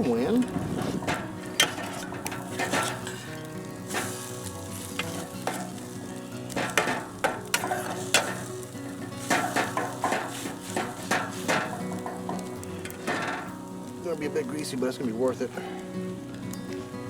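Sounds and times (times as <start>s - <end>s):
eggs sizzling in grease: 0.0s - 17.0s
utensil scraping a pan: 0.4s - 13.6s.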